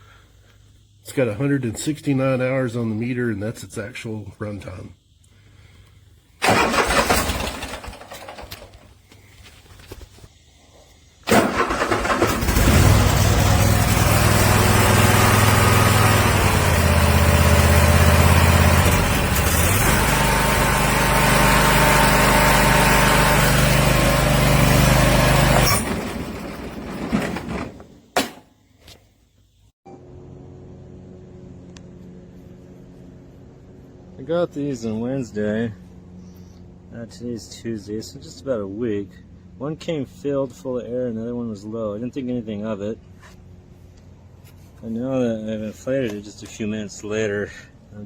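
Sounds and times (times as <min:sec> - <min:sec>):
riding mower engine running: 0:06.4 - 0:09.2, 0:11.2 - 0:28.1, 0:29.9 - 0:36.9.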